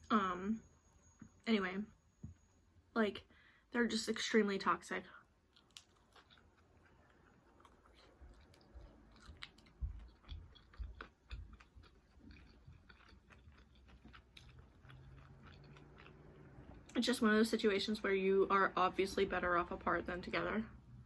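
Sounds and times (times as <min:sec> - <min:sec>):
close chewing and biting: 0:05.5 - 0:17.0.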